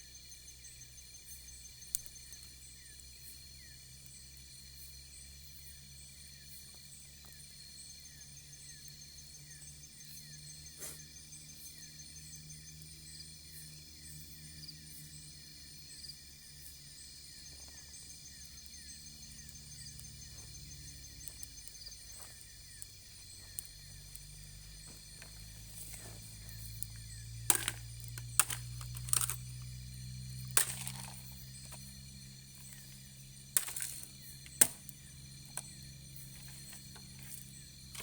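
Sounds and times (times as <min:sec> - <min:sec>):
sharp cracks and snaps: 0:26.6 - 0:29.7, 0:30.4 - 0:31.8, 0:33.5 - 0:35.7.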